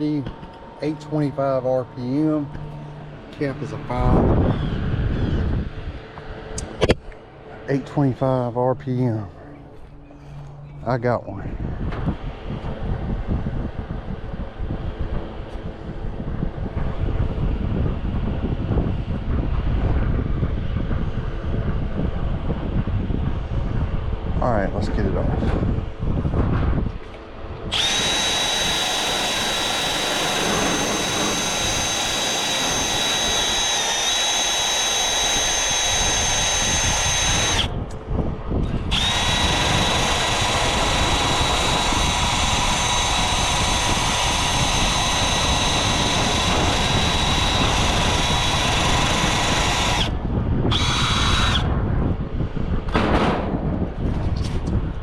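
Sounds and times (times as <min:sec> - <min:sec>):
power drill whining: 0:00.0 - 0:05.4, 0:27.7 - 0:37.8, 0:38.9 - 0:51.7.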